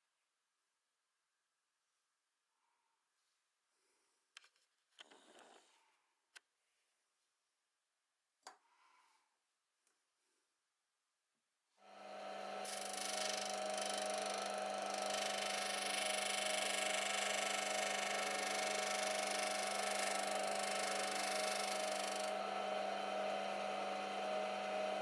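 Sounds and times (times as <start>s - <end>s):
disc sander motor running: 11.8s - 25.0s
wood being sanded: 12.2s - 25.0s.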